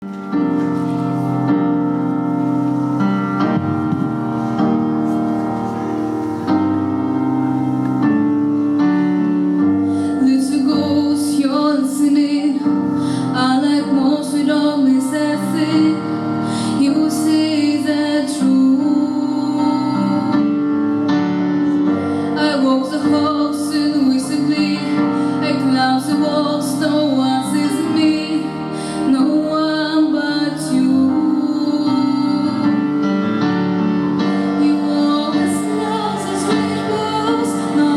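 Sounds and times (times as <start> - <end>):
piano: 0.0 - 37.9
woman singing: 10.1 - 20.6, 22.3 - 33.0, 34.4 - 37.9.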